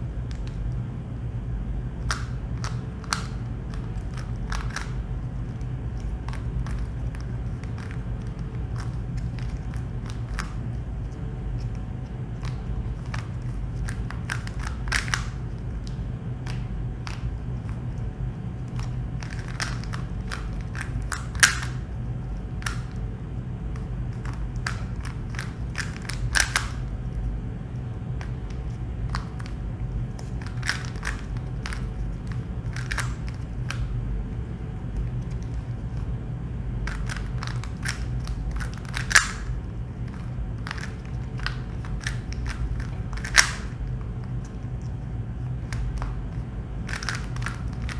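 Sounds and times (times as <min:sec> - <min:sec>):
steady low hum: 0:00.0 - 0:47.9
puzzle cube layers clicking: 0:12.4 - 0:15.4, 0:18.7 - 0:21.8, 0:23.8 - 0:26.8, 0:30.2 - 0:33.9, 0:36.9 - 0:39.5, 0:40.1 - 0:43.8, 0:45.7 - 0:47.9.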